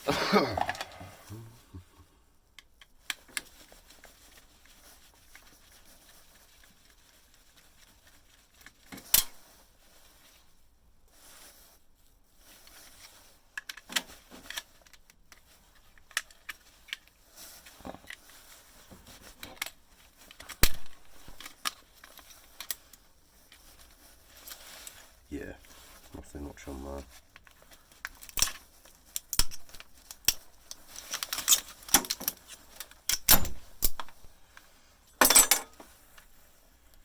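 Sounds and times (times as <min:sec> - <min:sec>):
tools and parts clicking and knocking: 0:28.2 - 0:34.2, 0:35.2 - 0:35.9.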